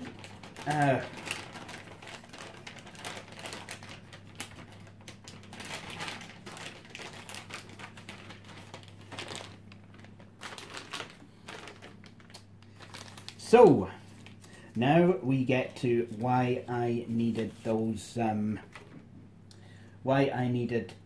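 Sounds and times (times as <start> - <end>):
packaging clicks taps and crinkling: 0.0 - 13.6
steady low hum: 0.0 - 21.0.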